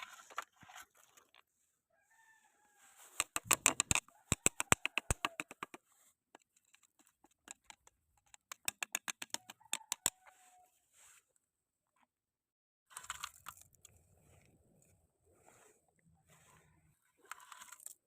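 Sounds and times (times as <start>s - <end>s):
hand tool clicks and taps: 3.2s - 5.8s, 7.2s - 10.2s.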